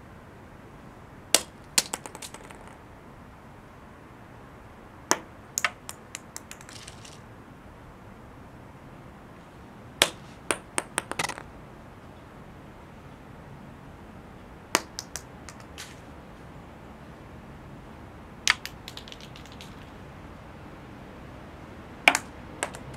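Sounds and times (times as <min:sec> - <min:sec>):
acorns dropping on stone paving: 0:01.3 - 0:02.8, 0:05.1 - 0:07.2, 0:10.0 - 0:11.5, 0:14.8 - 0:16.1, 0:18.4 - 0:20.0, 0:22.1 - 0:22.9.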